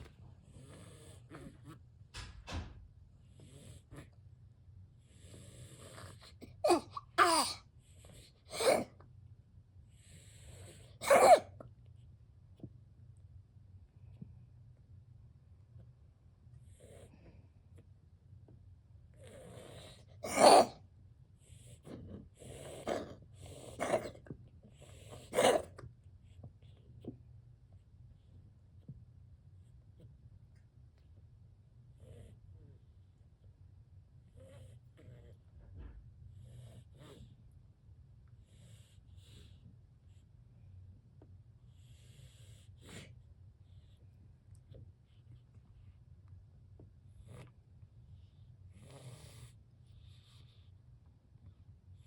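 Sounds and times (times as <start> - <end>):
cat coughing: 6.5 - 7.6, 8.5 - 9.0, 11.0 - 11.6, 20.2 - 20.8.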